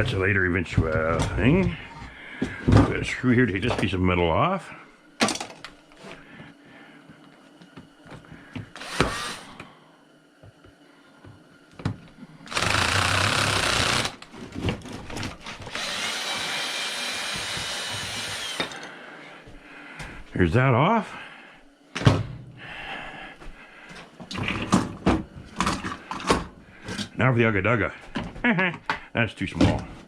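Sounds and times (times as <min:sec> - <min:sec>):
power drill running: 0:08.7 - 0:09.5, 0:12.5 - 0:14.3, 0:15.6 - 0:18.9.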